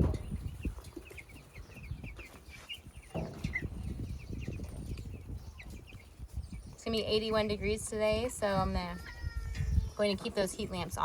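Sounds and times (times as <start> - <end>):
low rumbling with small knocks: 0.0 - 6.9
chicks peeping: 0.0 - 11.0.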